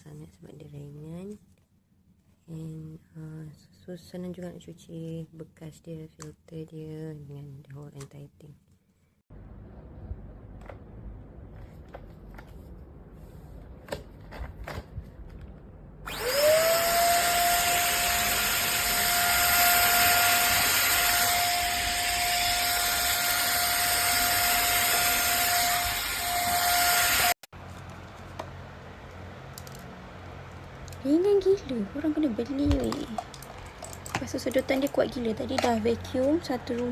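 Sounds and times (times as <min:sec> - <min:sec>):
vacuum cleaner motor whine: 0:16.0 - 0:27.4.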